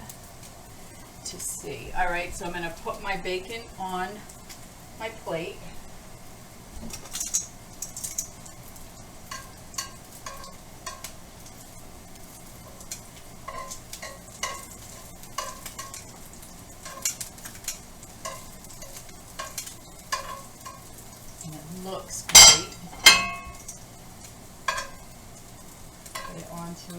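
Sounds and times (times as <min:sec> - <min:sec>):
bacon fat sizzling: 0:00.0 - 0:26.9
utensil scraping a frying pan: 0:06.9 - 0:21.3, 0:22.3 - 0:23.8, 0:24.6 - 0:26.5.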